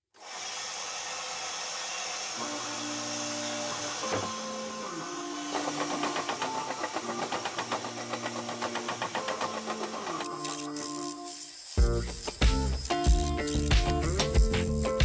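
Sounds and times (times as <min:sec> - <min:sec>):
power tool running: 0:00.1 - 0:15.0
fast rhythmic rattle: 0:05.5 - 0:15.0.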